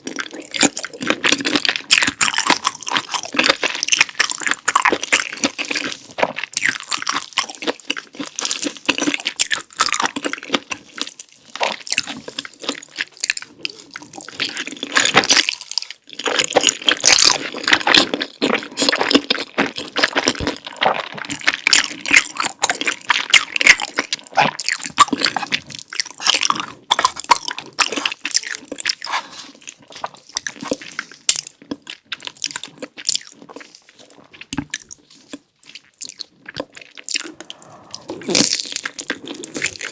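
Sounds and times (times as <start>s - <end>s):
chewing and biting food: 0.0s - 39.9s
wet sticky mouth sounds: 21.7s - 39.9s.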